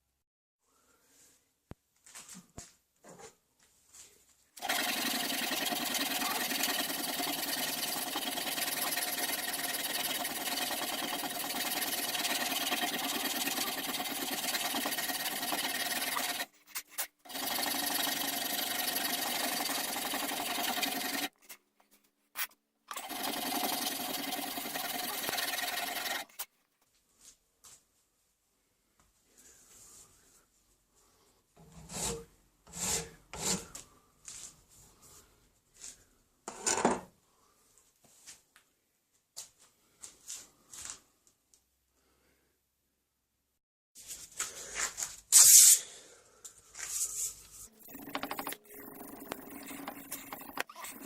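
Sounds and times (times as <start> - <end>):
electric power tool whining: 4.6 - 16.5, 17.3 - 21.4, 22.9 - 26.4, 47.8 - 51.0.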